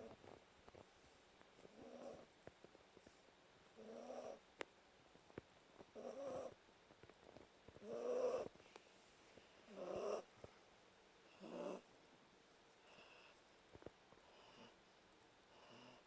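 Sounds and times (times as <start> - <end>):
dog snoring: 1.7 - 2.3, 3.8 - 4.4, 5.9 - 6.6, 7.8 - 8.5, 9.7 - 10.3, 11.3 - 11.9, 14.2 - 14.8, 15.5 - 16.0.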